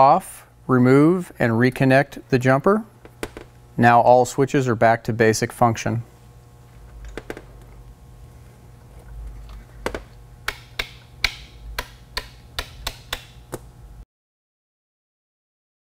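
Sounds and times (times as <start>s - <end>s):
faint low hum: 0.0s - 14.0s
switches clicking: 7.0s - 7.8s, 9.8s - 13.7s.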